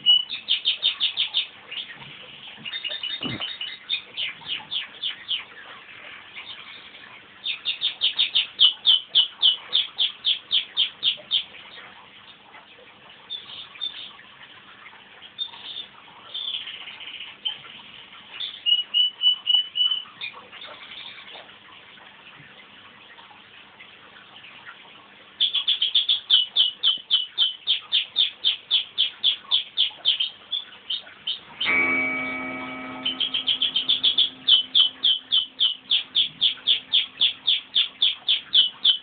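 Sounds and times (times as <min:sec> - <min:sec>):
canary singing: 0:00.0 - 0:01.9, 0:25.4 - 0:39.0.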